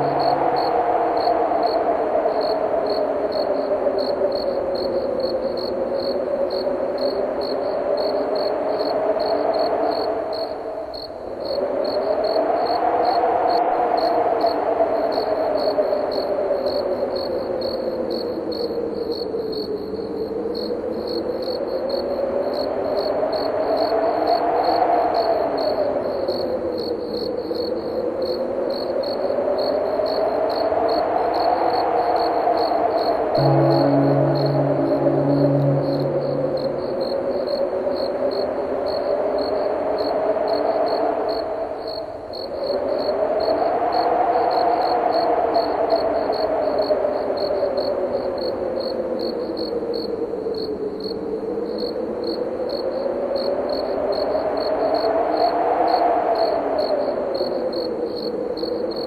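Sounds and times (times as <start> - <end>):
wind howling: 0.0 - 41.9, 42.5 - 59.0
crickets chirping: 0.0 - 59.0.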